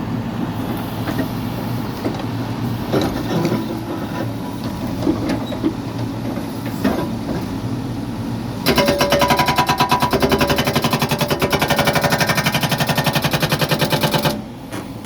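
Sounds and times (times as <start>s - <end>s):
diesel engine running: 0.0s - 15.0s
hydraulic breaker hammering: 8.6s - 14.5s.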